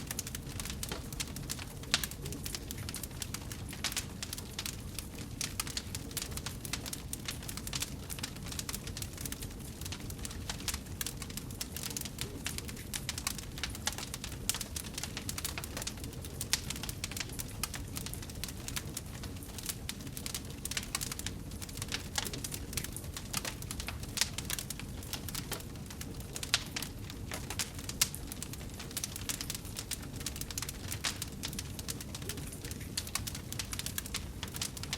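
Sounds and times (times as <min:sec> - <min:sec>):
fire crackling and popping: 0:00.0 - 0:34.9
wood fire rumbling: 0:00.0 - 0:34.9.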